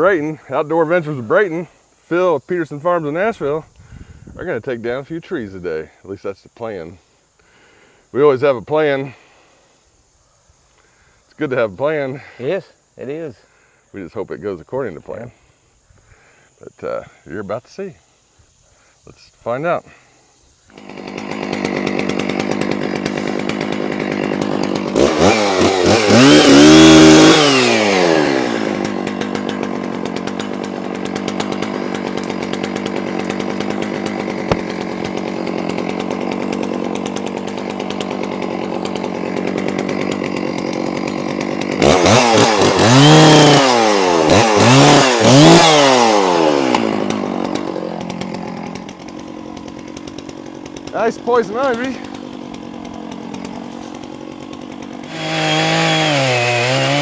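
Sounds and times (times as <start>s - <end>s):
chainsaw idling and revving: 0.0s - 3.6s, 20.0s - 57.0s.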